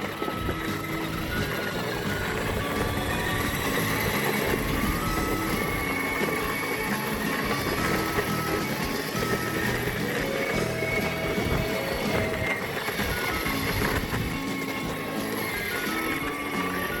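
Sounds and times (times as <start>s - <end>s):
plastic wheels rolling on pavement: 0.0s - 17.0s
simple stepping melody: 0.0s - 17.0s
toy car electric motor rumble: 0.0s - 17.0s.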